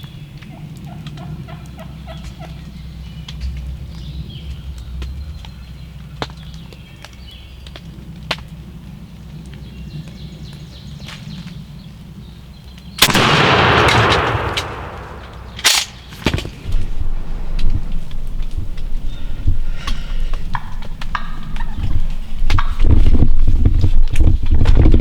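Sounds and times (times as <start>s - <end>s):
shotgun blast with echo: 13.0s - 16.6s
sharp crack: 13.0s - 17.7s
rustling and thumping: 15.3s - 18.9s.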